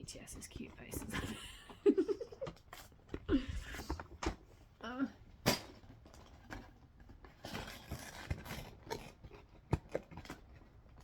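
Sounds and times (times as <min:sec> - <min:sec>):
cardboard box rustling and scraping: 0:05.7 - 0:11.0.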